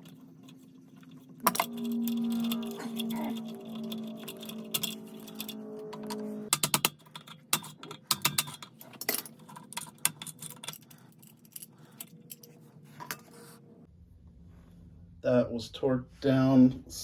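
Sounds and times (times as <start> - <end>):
metal tools and fittings clinking: 0.0 - 13.2.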